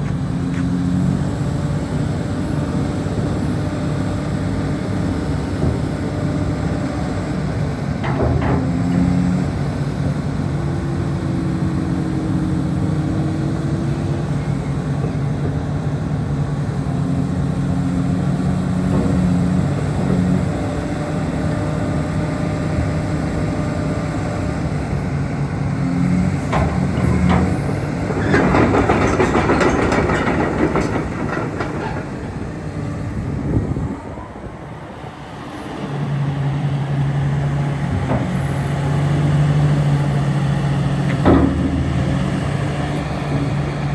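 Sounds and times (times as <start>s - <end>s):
excavator diesel engine running: 0.0s - 43.9s
clattering clicks: 26.5s - 32.4s.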